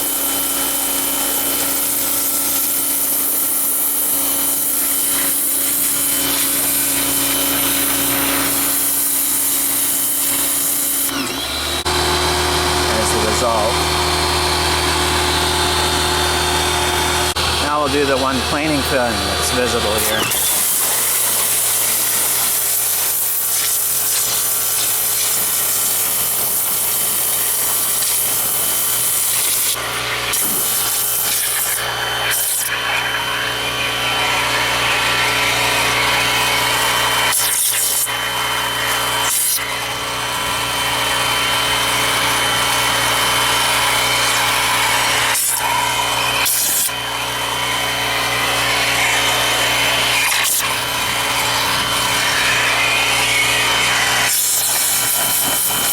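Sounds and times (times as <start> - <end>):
pressure washer spray hissing: 0.0 - 11.1, 19.7 - 32.8, 49.8 - 55.9
pump humming: 0.0 - 55.9.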